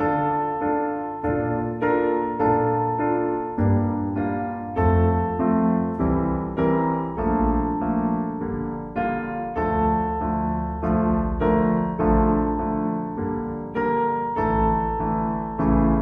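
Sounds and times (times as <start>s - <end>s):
piano chords: 0.0s - 16.0s.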